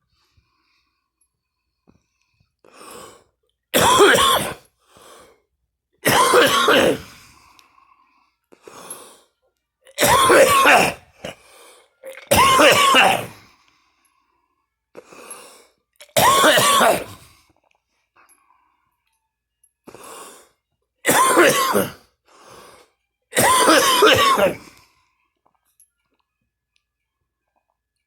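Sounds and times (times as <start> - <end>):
person coughing and gagging: 3.8 - 4.6, 6.0 - 7.2, 10.0 - 11.4, 12.1 - 13.4, 16.0 - 17.2, 21.1 - 22.0, 23.4 - 24.7
gasping breaths: 7.0 - 9.4.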